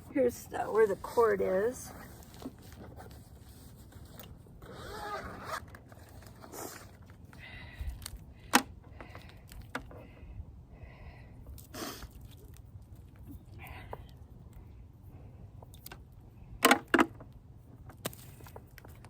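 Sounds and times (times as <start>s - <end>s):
rustling and scraping: 0.0s - 8.2s.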